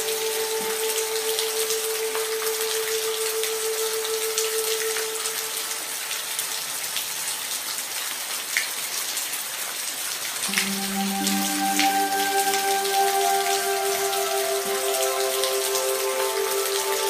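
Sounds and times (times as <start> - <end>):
steady rain: 0.0 - 17.0
held musical note: 10.5 - 17.0.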